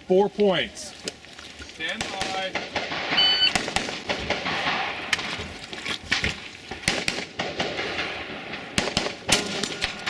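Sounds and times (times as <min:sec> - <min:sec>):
rifle shots: 0:02.0 - 0:05.4, 0:06.1 - 0:10.0.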